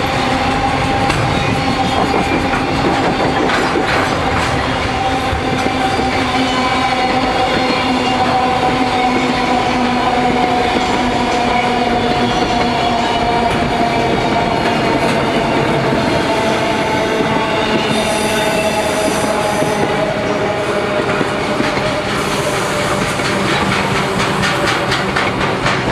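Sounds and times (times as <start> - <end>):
wheels clattering on rails: 0.9 - 6.4, 20.9 - 25.9
freight train wagons rolling past: 21.1 - 25.9.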